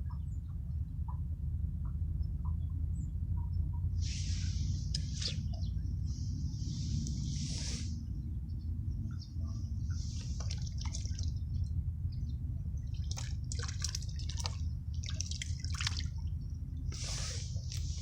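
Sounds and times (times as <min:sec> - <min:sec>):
steady low rumble: 0:00.0 - 0:18.0
water splashing and dripping: 0:09.9 - 0:11.6, 0:12.8 - 0:18.0.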